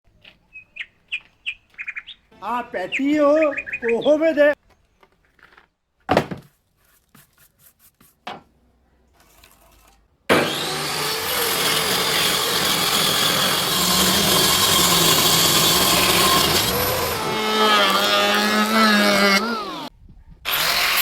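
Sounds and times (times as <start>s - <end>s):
power tool working wood: 10.3s - 19.9s, 20.5s - 21.0s.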